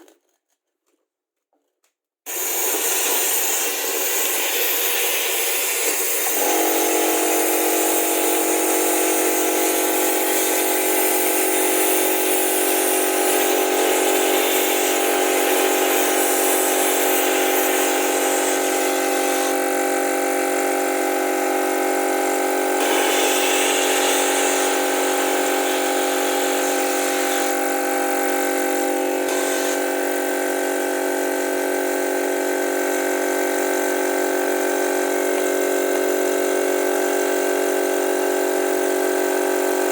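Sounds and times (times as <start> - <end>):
compressed air hissing: 2.3 - 20.1, 22.0 - 30.4
compressor motor hum: 2.3 - 39.9.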